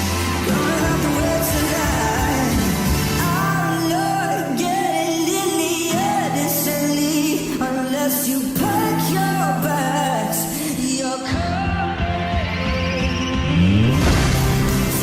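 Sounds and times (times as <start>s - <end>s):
pop song with singer: 0.0s - 15.0s.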